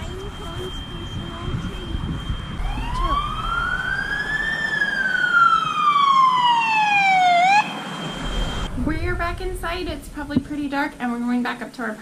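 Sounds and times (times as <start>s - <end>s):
fire engine siren wailing: 0.0s - 8.8s
steady high-pitched tone: 0.0s - 11.0s.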